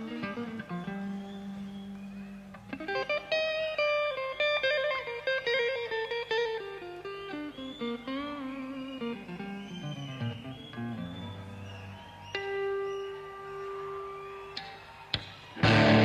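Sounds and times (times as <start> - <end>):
electric guitar single notes: 0.0 - 11.7, 15.6 - 16.0.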